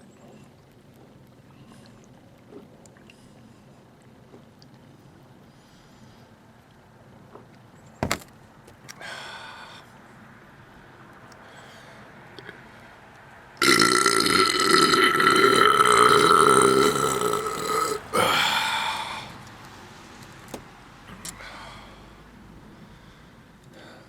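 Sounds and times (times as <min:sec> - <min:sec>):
man burping loudly: 0:13.6 - 0:19.3.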